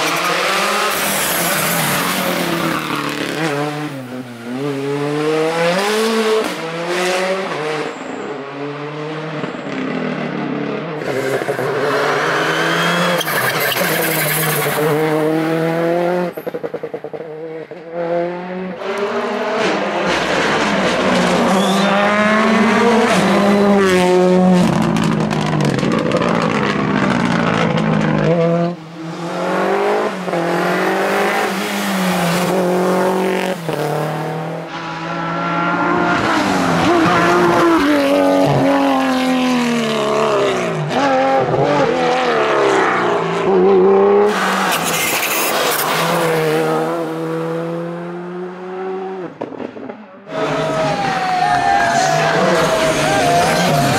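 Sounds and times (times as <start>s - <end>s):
rally car engines revving: 0.0s - 53.9s
tyre squeal: 11.0s - 15.0s, 21.4s - 22.1s, 44.3s - 46.3s.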